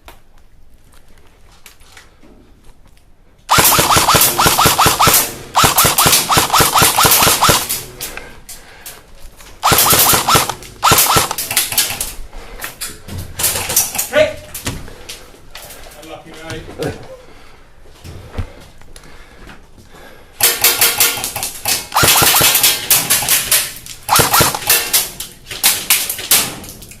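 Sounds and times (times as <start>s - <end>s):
airsoft rifle firing bursts: 3.5s - 7.8s, 9.6s - 12.0s, 20.4s - 25.0s.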